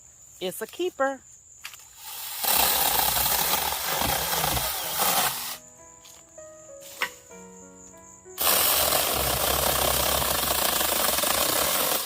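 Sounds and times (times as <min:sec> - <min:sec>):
mini chainsaw running: 0:02.0 - 0:05.6, 0:08.4 - 0:12.0
background music: 0:03.7 - 0:12.0.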